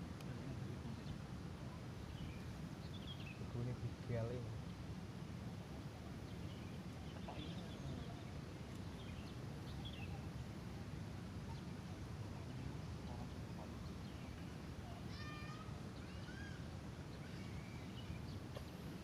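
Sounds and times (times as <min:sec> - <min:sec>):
low outdoor rumble: 0:00.0 - 0:19.0
birds chirping: 0:01.9 - 0:04.8, 0:06.2 - 0:10.5.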